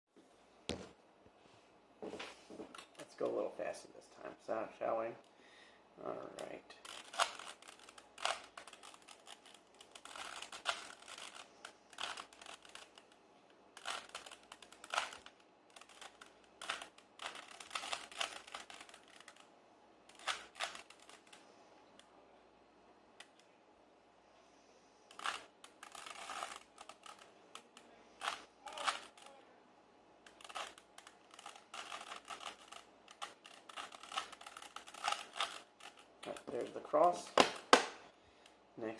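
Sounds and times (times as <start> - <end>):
plastic cube layers clicking: 6.4 - 13.2, 13.8 - 19.4, 20.1 - 21.4, 25.1 - 29.4, 30.3 - 36.7.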